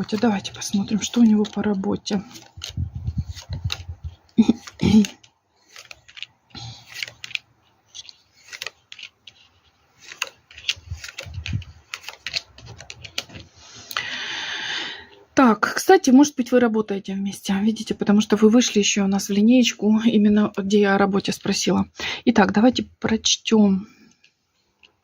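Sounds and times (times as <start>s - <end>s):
playing cards clicking and tapping: 0.0s - 13.5s
cards sliding: 0.0s - 13.8s.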